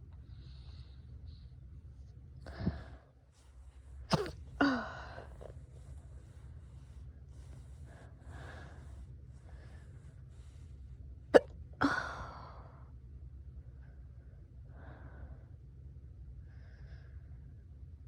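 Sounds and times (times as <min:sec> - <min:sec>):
soft breaths: 0:00.0 - 0:11.3
person hiccuping: 0:04.1 - 0:04.9.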